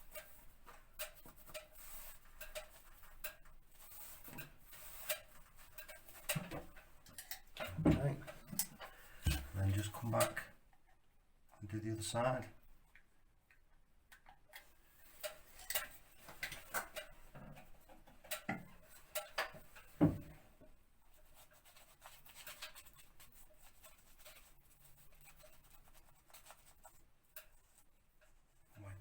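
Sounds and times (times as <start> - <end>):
light taps and scrapes: 0.0 - 11.0, 12.9 - 29.0
rubbing over paper: 21.1 - 27.9.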